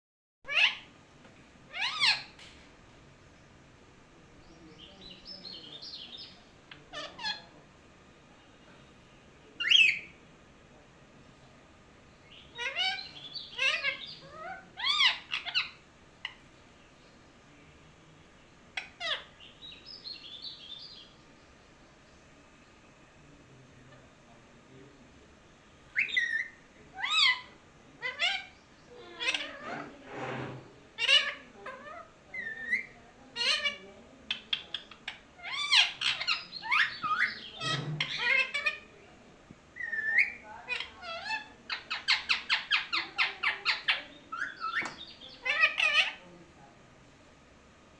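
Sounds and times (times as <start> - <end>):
parrot calling: 0.5 - 0.9, 1.7 - 2.4, 5.0 - 7.5, 9.6 - 10.2, 12.2 - 16.4, 18.7 - 21.2, 25.8 - 30.0, 30.9 - 39.0, 39.8 - 46.3.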